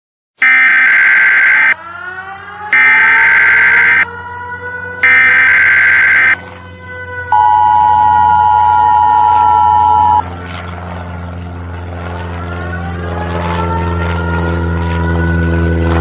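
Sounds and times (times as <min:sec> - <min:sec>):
gliding siren-like tones: 0:00.4 - 0:10.2
two-note electronic alert tone: 0:07.3 - 0:10.2.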